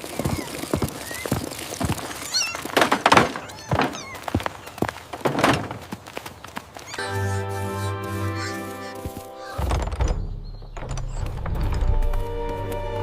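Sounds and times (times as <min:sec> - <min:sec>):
thuds and knocks: 0:02.7 - 0:04.5, 0:05.1 - 0:05.9, 0:09.5 - 0:12.6.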